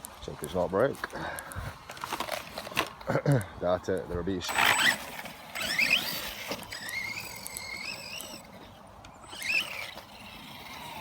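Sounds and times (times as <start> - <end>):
electric motor whining: 4.5 - 11.0.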